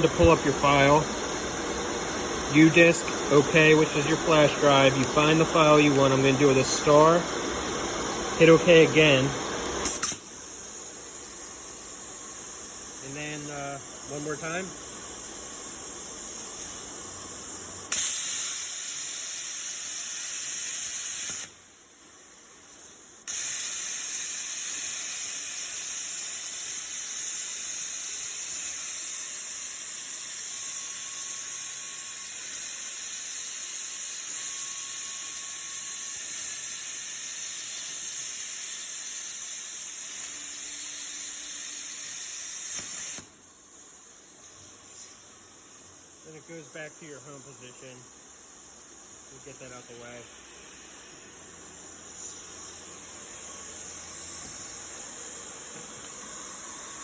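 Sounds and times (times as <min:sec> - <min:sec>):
quiet air hiss: 0:00.0 - 0:17.9, 0:42.8 - 0:57.0
plasma torch arc hissing: 0:00.0 - 0:57.0.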